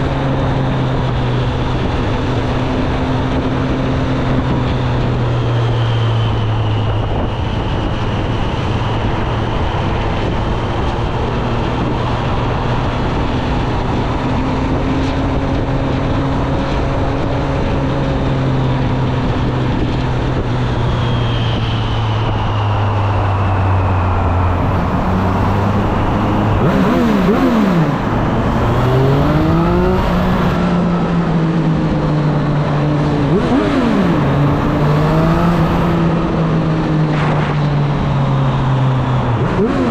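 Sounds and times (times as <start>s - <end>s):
motorcycle engine running: 23.5s - 39.9s.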